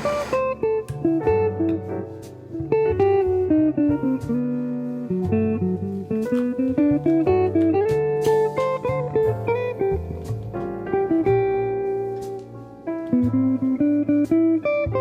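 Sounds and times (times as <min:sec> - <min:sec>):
plucked guitar melody: 0:00.0 - 0:15.0.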